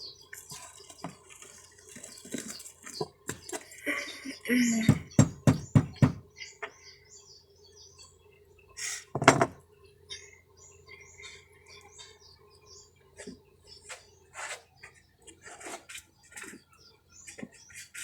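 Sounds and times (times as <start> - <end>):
birds chirping: 0.0 - 18.0
quick knocks: 4.9 - 6.2.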